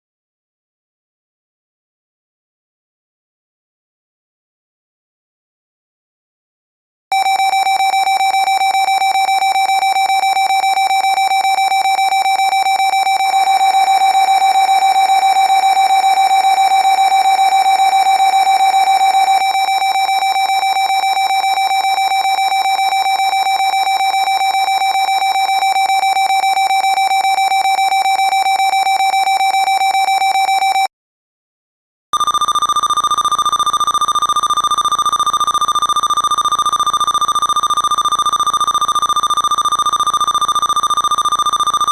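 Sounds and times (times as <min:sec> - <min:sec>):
higher-pitched pulsing tone: 0:09.0 - 0:27.7.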